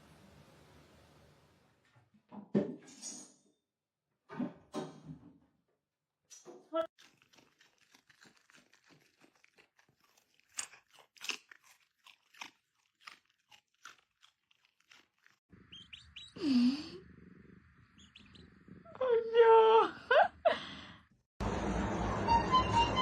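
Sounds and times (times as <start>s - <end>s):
animal crunchy chewing: 7.0s - 16.3s.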